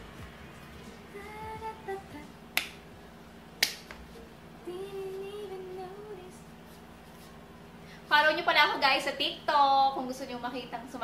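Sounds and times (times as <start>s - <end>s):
quiet background music: 0.0s - 11.0s
finger snaps: 2.5s - 2.8s, 3.6s - 4.0s.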